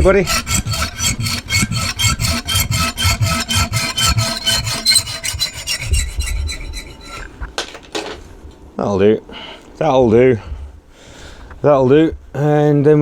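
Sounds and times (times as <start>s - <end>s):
hacksaw sawing through metal: 0.0s - 7.3s.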